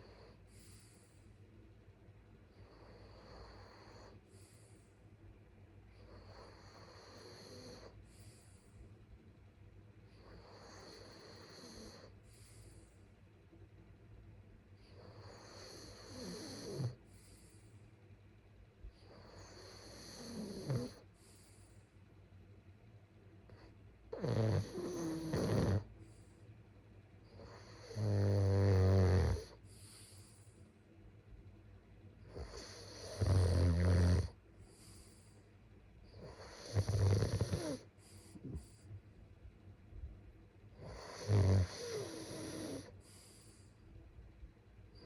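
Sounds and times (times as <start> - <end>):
quiet breathing: 0.0 - 45.0
person snoring: 24.2 - 25.9, 36.2 - 37.8, 40.8 - 42.9.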